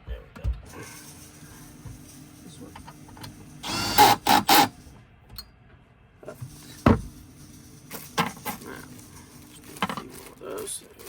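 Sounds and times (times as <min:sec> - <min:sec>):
tools knocking and clicking: 0:03.2 - 0:04.7.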